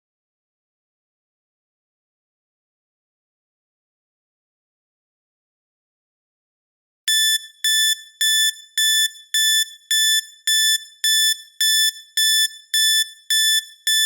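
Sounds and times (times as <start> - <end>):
electronic timer alarm beeping: 7.1 - 14.0.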